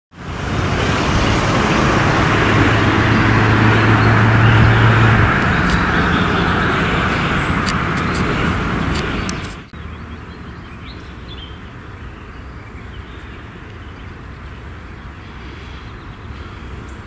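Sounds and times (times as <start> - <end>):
train wheels rumbling on rails: 0.2 - 9.7
locomotive low hum: 0.2 - 10.3.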